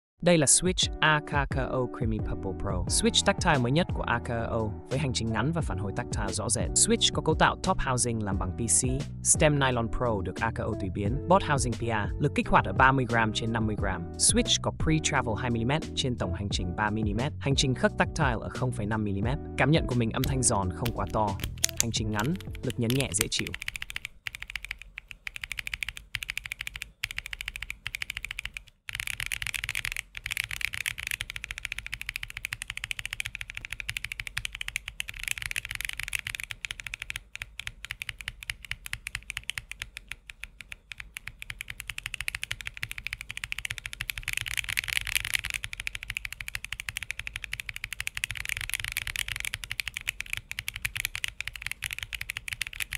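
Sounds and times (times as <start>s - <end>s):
typing on mechanical keyboard: 20.2s - 52.9s.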